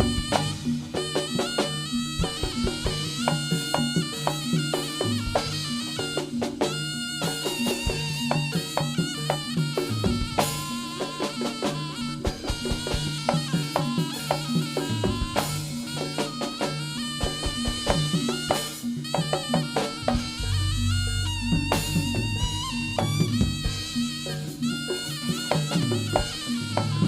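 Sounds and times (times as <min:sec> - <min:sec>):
drum strokes: 0:00.0 - 0:27.0
reedy wind instrument melody: 0:00.0 - 0:27.0
repeating low pitched tones: 0:20.0 - 0:24.6.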